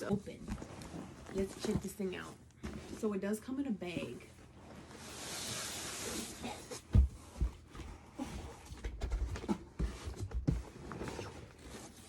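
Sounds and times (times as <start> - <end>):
knocks and thumps: 6.8 - 8.0.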